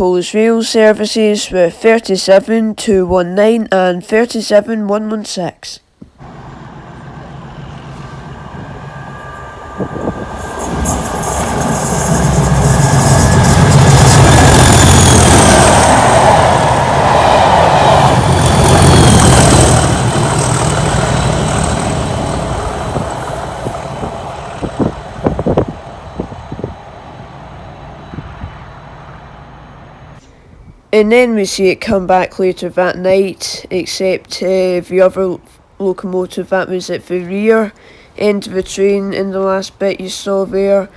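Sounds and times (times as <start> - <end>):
diesel locomotives passing: 6.2 - 30.2.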